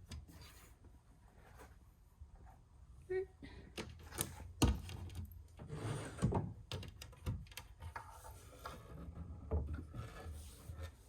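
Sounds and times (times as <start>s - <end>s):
light scrapes of cabinet door: 5.6s - 6.4s, 8.0s - 11.0s.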